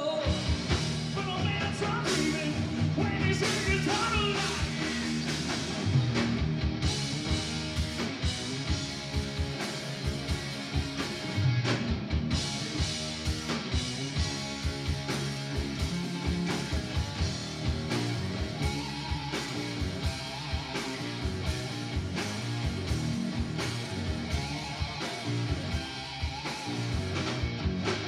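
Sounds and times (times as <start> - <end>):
electric guitar: 0.0 - 28.0
steady drum beat: 0.2 - 28.0.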